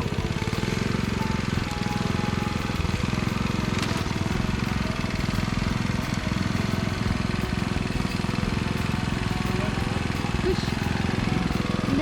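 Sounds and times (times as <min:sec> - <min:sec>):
small engine running: 0:00.0 - 0:12.0.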